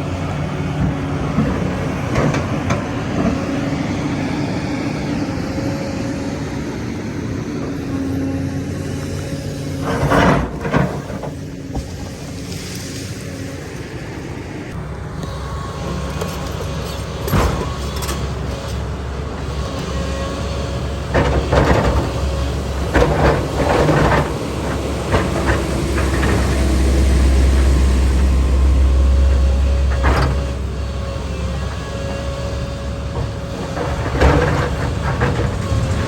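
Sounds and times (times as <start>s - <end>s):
excavator diesel engine droning: 0.0s - 36.0s
metal clanks and knocks: 9.1s - 12.3s, 29.3s - 31.7s, 33.1s - 36.0s.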